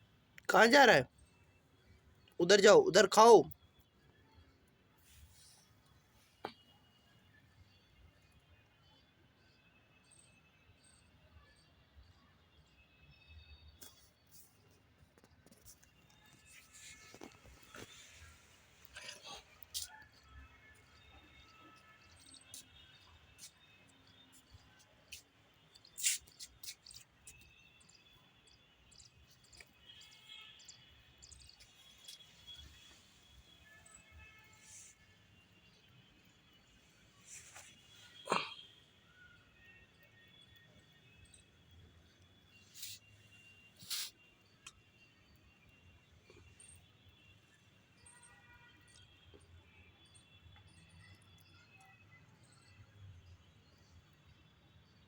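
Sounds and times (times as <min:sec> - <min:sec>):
small birds chirping: 0:13.7 - 0:34.4.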